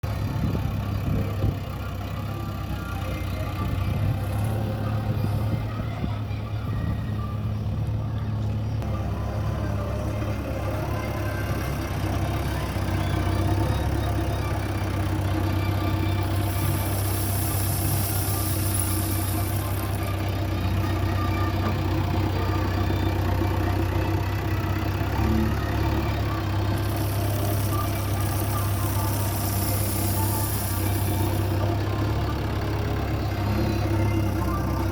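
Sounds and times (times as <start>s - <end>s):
diesel engine running: 0.0s - 34.9s
high hiss: 16.3s - 19.9s, 26.9s - 31.5s.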